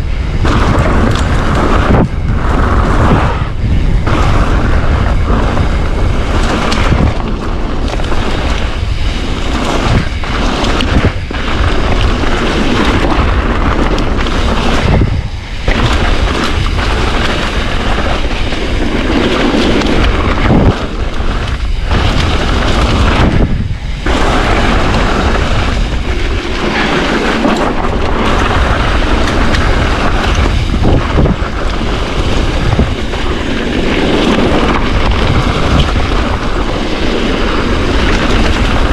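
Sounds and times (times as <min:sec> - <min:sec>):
tyres on gravel: 0:00.0 - 0:38.9
wind buffeting microphone: 0:00.0 - 0:38.9.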